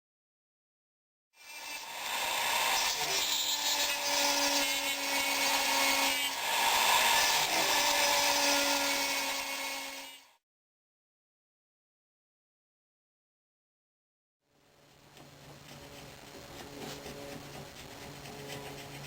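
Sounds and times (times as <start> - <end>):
power tool rasping wood: 1.4 - 10.3, 15.0 - 19.0.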